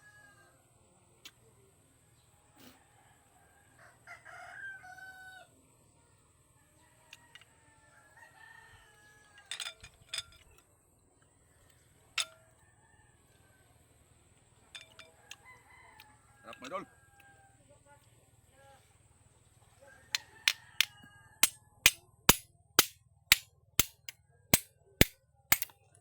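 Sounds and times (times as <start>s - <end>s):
rooster crowing: 0.0s - 0.6s, 2.6s - 5.6s, 6.6s - 9.7s, 15.0s - 17.6s, 19.8s - 21.6s
sharp clicks: 20.8s - 25.7s.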